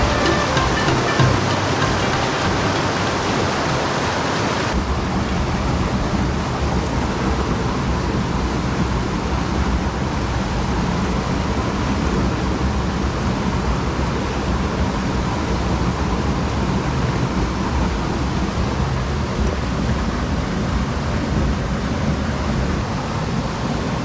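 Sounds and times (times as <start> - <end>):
background music: 0.0 - 4.8
mountain stream rushing: 0.0 - 5.2.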